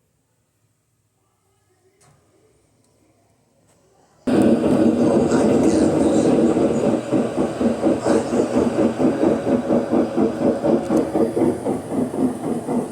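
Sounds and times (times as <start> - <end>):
washing machine clattering: 4.3 - 12.9.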